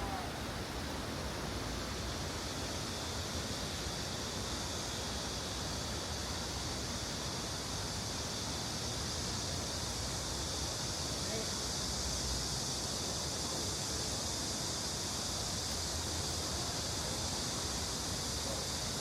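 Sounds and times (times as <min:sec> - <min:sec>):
stream water rushing: 0:00.0 - 0:12.6.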